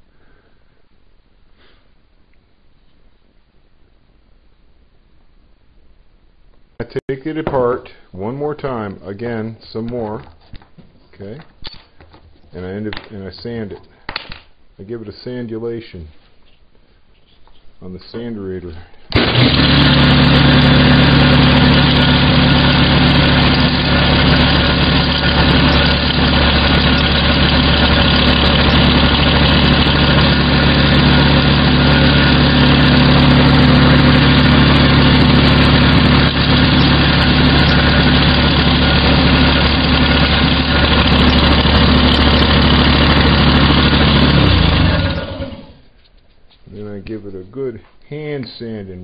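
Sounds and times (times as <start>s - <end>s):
electric sander running: 19.1s - 45.8s
motor winding down: 19.1s - 45.8s.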